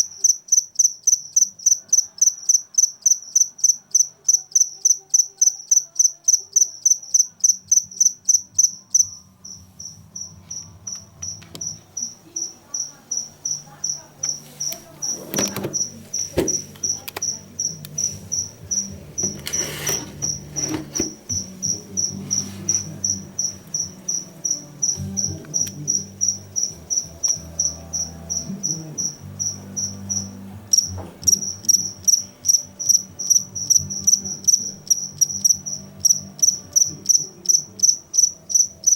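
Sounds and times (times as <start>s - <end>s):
cricket chirping: 0.0s - 38.9s
soft knocks and rustles: 18.0s - 21.5s.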